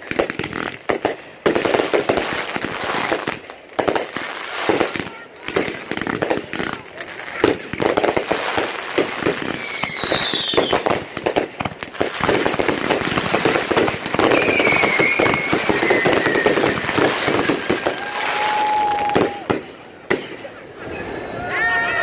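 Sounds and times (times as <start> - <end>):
fireworks crackling and popping: 0.0 - 21.0
high falling whistles: 14.3 - 17.1
steady whistle: 14.4 - 16.8.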